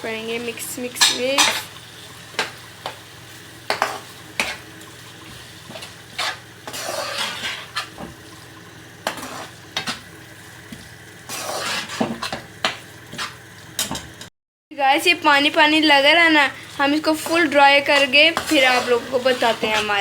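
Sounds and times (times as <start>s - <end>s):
food sizzling: 0.0s - 20.0s
spoon clinking and scraping a pan: 1.0s - 1.7s, 3.7s - 4.6s, 5.7s - 7.9s, 11.3s - 14.1s.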